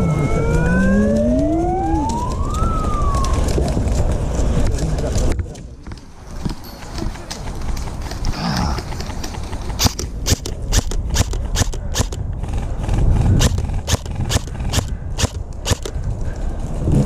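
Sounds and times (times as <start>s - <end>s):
footsteps walking: 5.9s - 12.2s.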